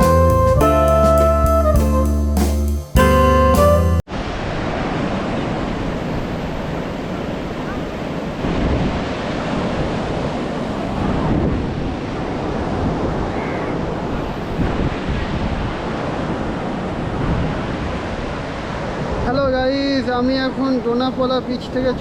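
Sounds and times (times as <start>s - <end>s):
sea waves breaking: 4.1s - 22.0s
wind buffeting microphone: 4.3s - 19.8s.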